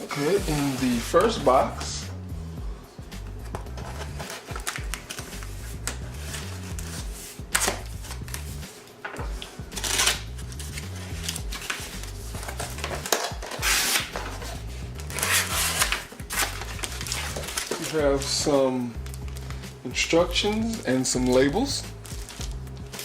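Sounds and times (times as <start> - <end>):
background music with bass line: 0.0 - 23.0
packaging rustling and crinkling: 3.8 - 19.6, 20.4 - 23.0.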